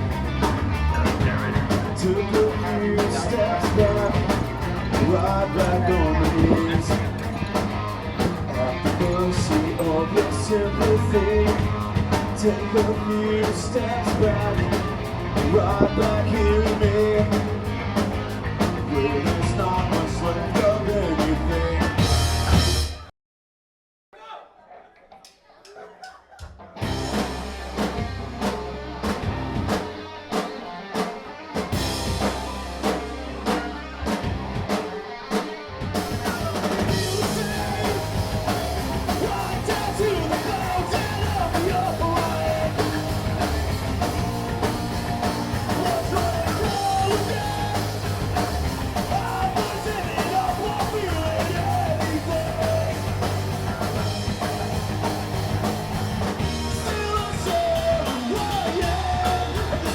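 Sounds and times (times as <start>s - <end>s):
drums: 0.0s - 23.1s, 25.0s - 59.9s
rock band playing: 0.0s - 23.1s, 26.6s - 59.9s
person singing: 0.8s - 7.2s, 8.5s - 17.5s, 36.1s - 43.2s, 45.6s - 48.0s, 49.0s - 53.3s, 56.7s - 59.9s.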